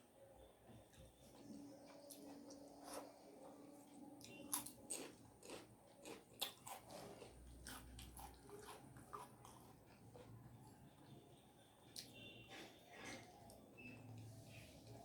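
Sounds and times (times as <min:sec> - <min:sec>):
person chewing food: 0:01.4 - 0:11.1.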